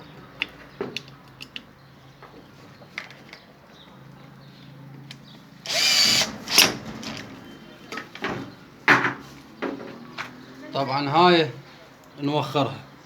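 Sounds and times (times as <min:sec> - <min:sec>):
electric drill-driver running: 0:05.7 - 0:06.8.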